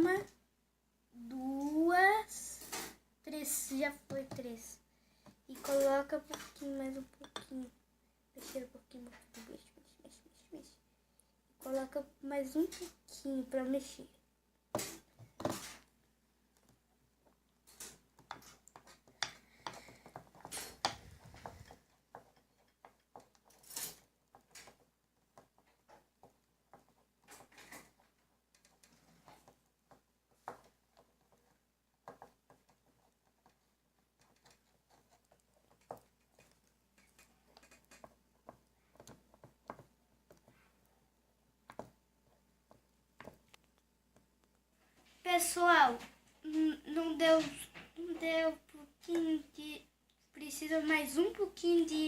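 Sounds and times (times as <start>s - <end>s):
utensil stirring slime in a bowl: 1.4s - 7.8s, 14.7s - 46.4s.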